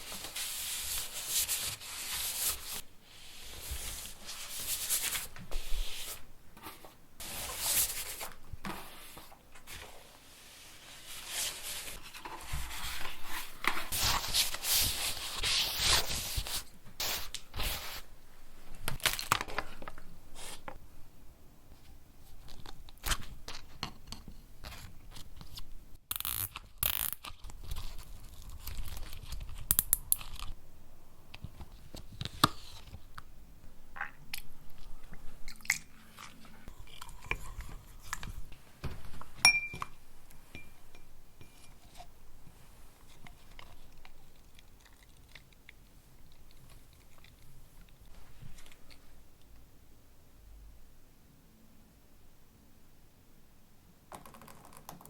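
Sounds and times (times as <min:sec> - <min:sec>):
paint strokes scraping on canvas: 0:00.0 - 0:18.1.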